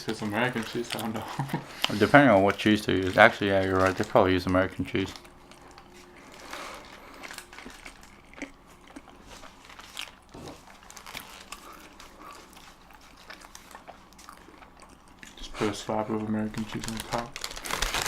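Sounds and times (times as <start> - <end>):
person chewing food: 5.0 - 15.8.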